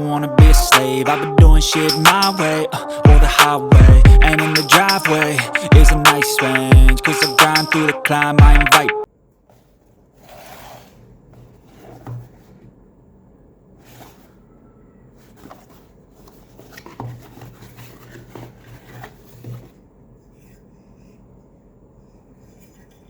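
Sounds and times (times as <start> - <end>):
faint low hum: 9.1 - 23.0
soft rubbing: 9.4 - 12.8, 13.7 - 23.0.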